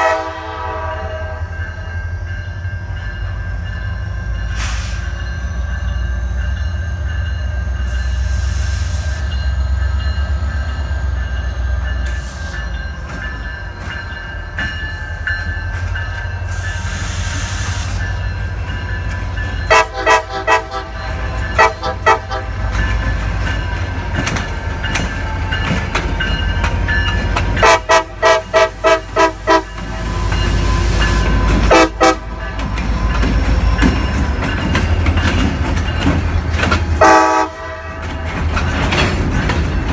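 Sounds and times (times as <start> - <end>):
locomotive air horn toots: 0.0 - 1.6, 19.6 - 22.8, 27.5 - 32.6, 37.0 - 38.2
diesel locomotive rumbling: 0.0 - 39.9.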